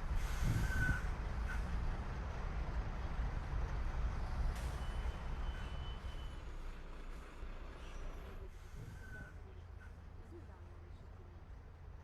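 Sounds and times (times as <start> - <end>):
bus engine and road rumble: 0.0 - 12.0.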